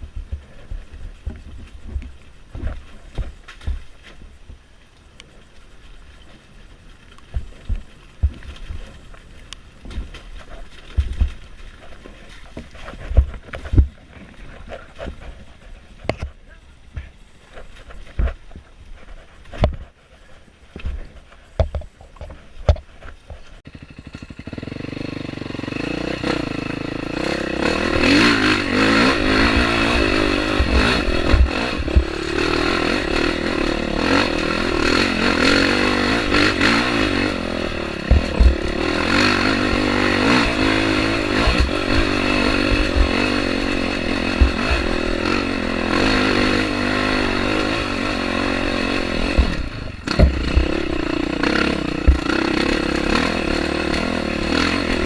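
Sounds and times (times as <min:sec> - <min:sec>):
bike knocks and rattles: 0:00.0 - 0:04.7, 0:05.8 - 0:20.0, 0:20.7 - 0:26.6, 0:27.2 - 0:55.0
dirt bike engine revving: 0:23.7 - 0:55.0.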